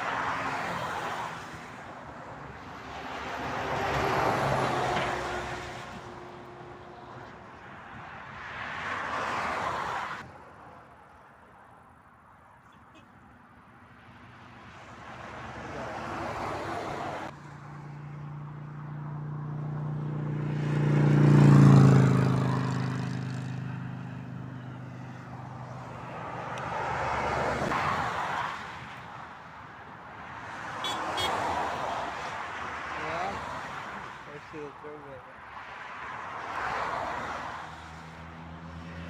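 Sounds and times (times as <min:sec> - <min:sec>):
motorway traffic passing: 0:00.0 - 0:39.0.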